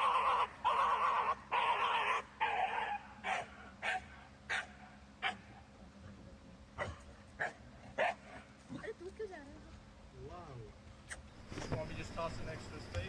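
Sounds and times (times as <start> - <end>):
dog barking: 0.0 - 5.5, 6.8 - 8.5
dog yipping: 0.0 - 5.5, 6.8 - 8.3.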